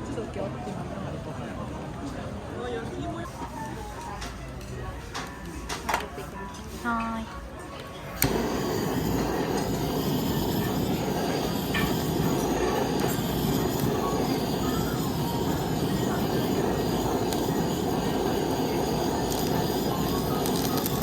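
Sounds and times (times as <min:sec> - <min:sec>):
food sizzling on a griddle: 0:08.3 - 0:21.0.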